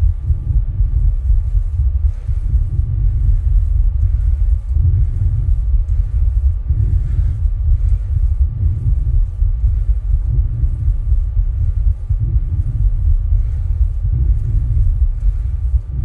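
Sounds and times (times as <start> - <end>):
heartbeat: 0.0 - 16.0
heavy low rumble: 0.0 - 16.0.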